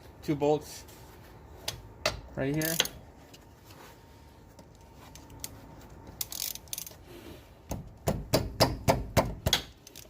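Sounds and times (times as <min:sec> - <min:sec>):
ratchet wrench clicking: 0:06.2 - 0:07.0, 0:09.5 - 0:10.0.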